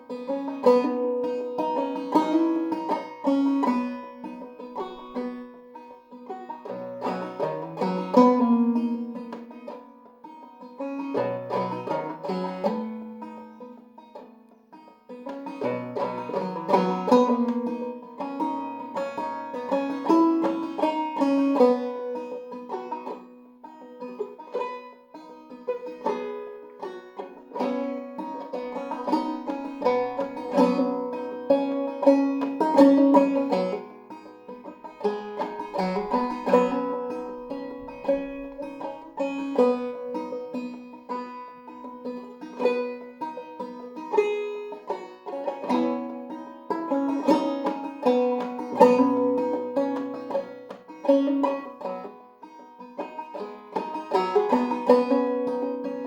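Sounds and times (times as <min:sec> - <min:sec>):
banjo plucked notes: 0:00.0 - 0:56.0.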